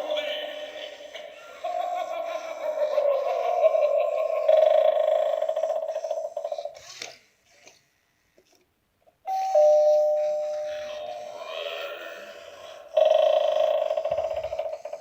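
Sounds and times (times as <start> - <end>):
two-note doorbell chime: 9.3 - 11.4.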